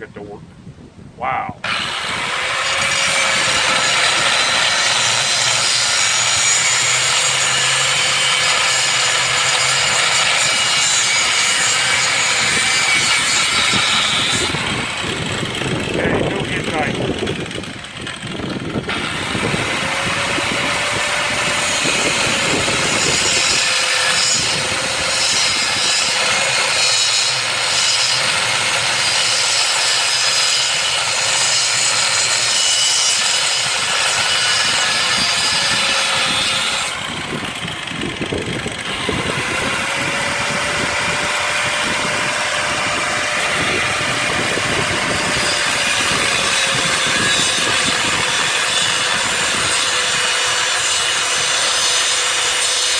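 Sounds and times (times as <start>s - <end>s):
grinder rasping on steel: 1.6s - 52.9s
motor whine: 33.5s - 51.5s.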